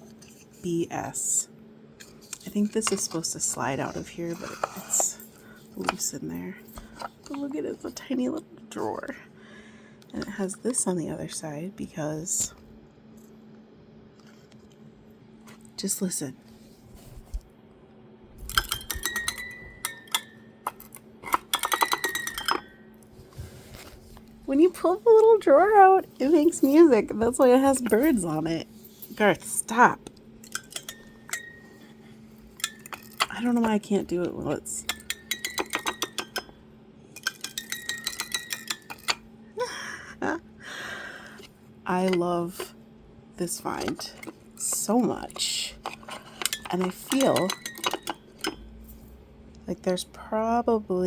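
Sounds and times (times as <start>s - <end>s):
music box tinkling notes: 18.5s - 22.9s, 32.6s - 36.5s, 37.2s - 39.2s, 46.4s - 48.6s.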